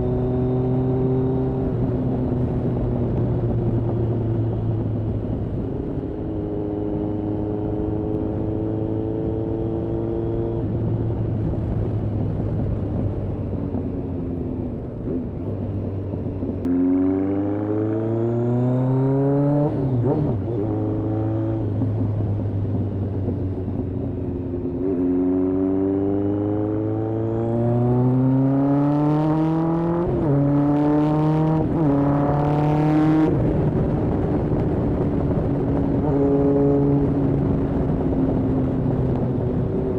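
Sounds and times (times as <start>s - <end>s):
motorcycle engine revving: 16.5s - 39.9s.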